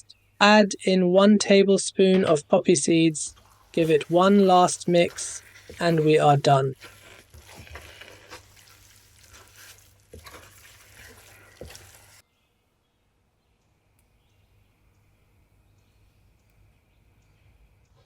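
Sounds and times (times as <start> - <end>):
spoon stirring thick food in pot: 2.9 - 12.2.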